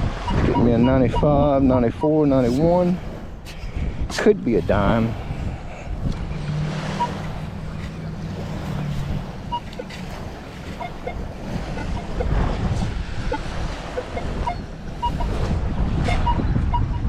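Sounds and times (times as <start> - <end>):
wind buffeting microphone: 0.0 - 17.0
metal detector beeps: 0.3 - 1.4, 7.0 - 7.3, 9.5 - 10.0, 10.8 - 12.4, 13.3 - 15.4, 16.1 - 17.0.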